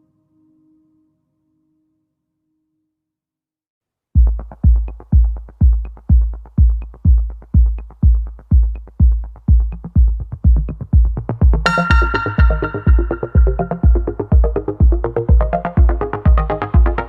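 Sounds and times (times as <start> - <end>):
electronic dance music: 9.2 - 17.0.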